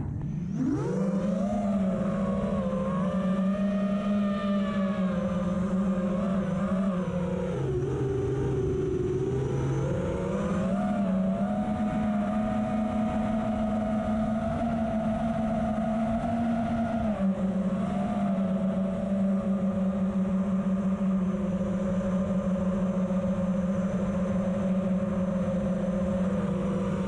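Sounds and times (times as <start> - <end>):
wind noise: 0.0 - 1.2
drone propellers whining: 0.0 - 27.0.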